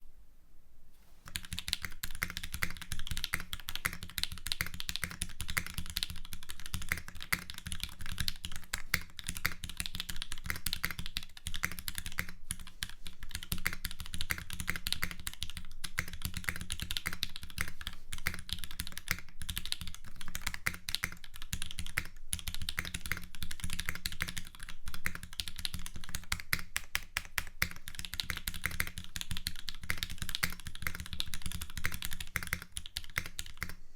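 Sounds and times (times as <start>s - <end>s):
fast typing on mechanical keyboard: 1.3s - 33.8s.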